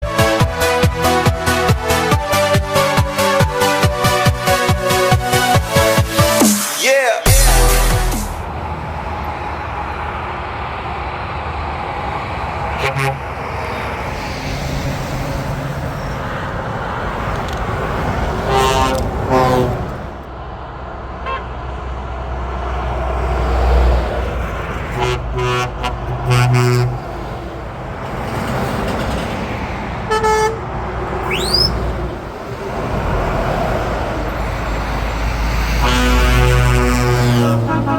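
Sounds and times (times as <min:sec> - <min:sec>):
engine and tyre rumble: 0:08.3 - 0:37.9
truck horn blasts: 0:12.7 - 0:13.4, 0:18.4 - 0:20.0, 0:21.2 - 0:21.6, 0:24.9 - 0:27.2, 0:30.1 - 0:31.8, 0:35.7 - 0:37.9
short rising whistle: 0:31.3 - 0:31.8.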